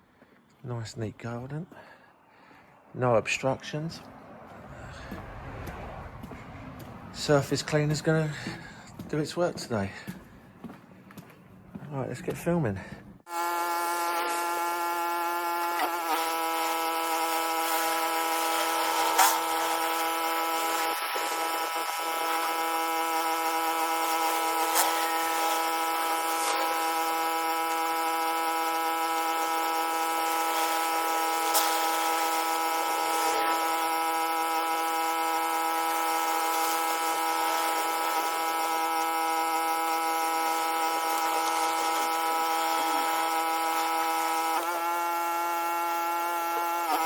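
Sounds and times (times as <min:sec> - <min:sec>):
surface cleaner on paving: 0:04.0 - 0:10.2, 0:13.3 - 0:47.0
pressure washer whining: 0:04.0 - 0:10.7, 0:13.2 - 0:47.0.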